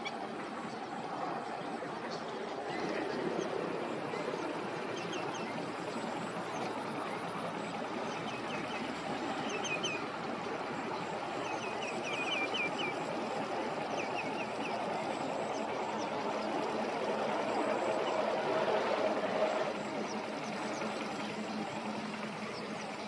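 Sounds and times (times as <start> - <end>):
steady rushing noise: 0.0 - 23.0
birds chirping: 10.9 - 18.2.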